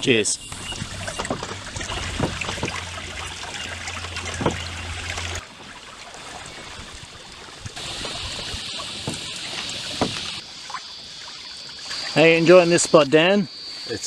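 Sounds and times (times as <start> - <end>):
water splashing around kayak: 0.4 - 13.2
paddle knocks: 0.6 - 5.8, 8.0 - 10.4
steady high hiss: 7.8 - 14.0.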